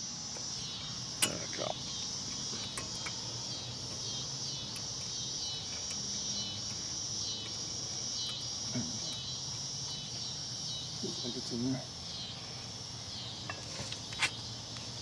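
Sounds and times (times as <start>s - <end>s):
insects chirring: 0.0s - 15.0s
small metal clicks: 0.3s - 3.4s, 4.6s - 6.8s, 7.4s - 10.1s.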